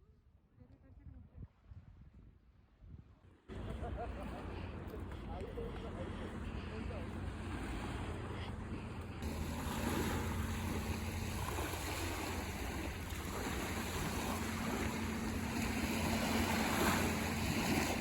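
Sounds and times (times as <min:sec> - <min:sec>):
faint low hum: 0:03.6 - 0:18.0
sea waves washing in: 0:05.7 - 0:18.0.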